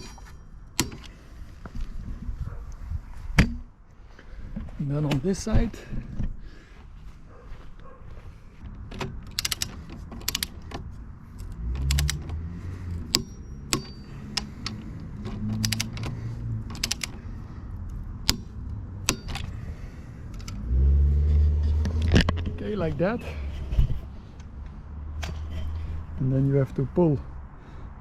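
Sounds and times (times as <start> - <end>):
sharp metallic clicks: 0.0 - 1.2, 8.9 - 20.7
ratchet wrench clicking: 9.3 - 10.5, 11.4 - 12.2, 13.0 - 17.2.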